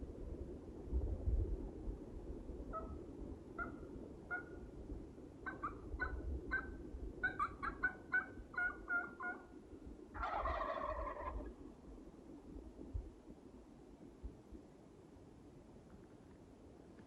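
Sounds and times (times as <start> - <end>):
turkey yelps: 2.7 - 3.0, 3.6 - 4.6, 5.4 - 9.5, 10.2 - 11.5
turkey gobbling: 3.6 - 4.6, 5.4 - 9.5, 10.2 - 11.5.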